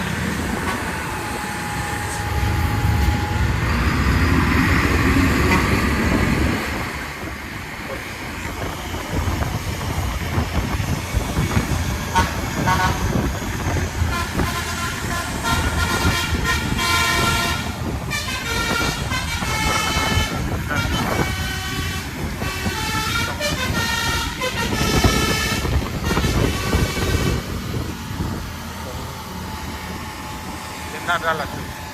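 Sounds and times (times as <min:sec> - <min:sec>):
bus engine and road rumble: 0:00.0 - 0:31.9
musical air horn playing tune: 0:12.1 - 0:13.3, 0:14.0 - 0:27.6.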